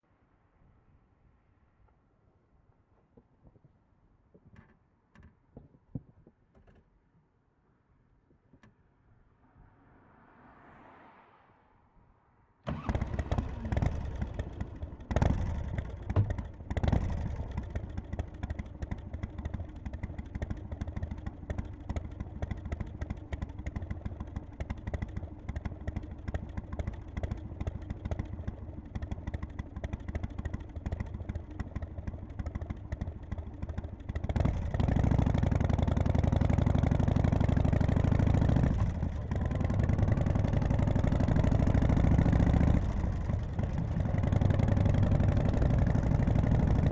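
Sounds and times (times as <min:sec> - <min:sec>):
motorcycle engine running: 0:12.7 - 0:46.9.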